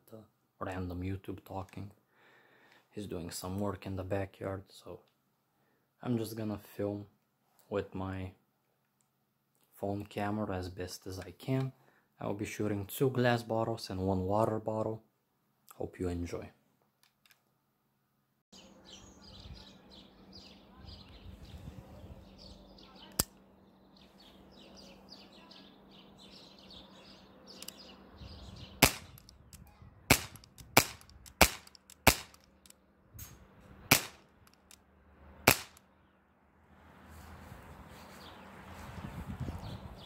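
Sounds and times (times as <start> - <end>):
birds chirping: 18.6 - 32.7, 37.4 - 40.0
air pistol firing pops: 28.8 - 32.4, 33.9 - 34.7, 35.5 - 35.8.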